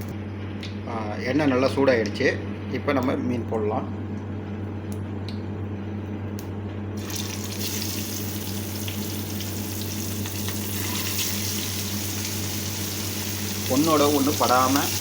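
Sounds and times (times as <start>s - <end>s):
oil sizzling in a frying pan: 7.0s - 15.0s.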